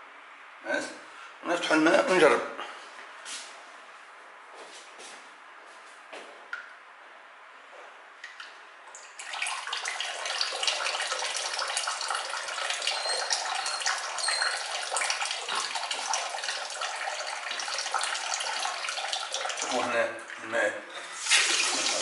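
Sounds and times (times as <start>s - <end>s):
tap water splashing into basin: 8.2s - 20.4s, 21.2s - 22.0s.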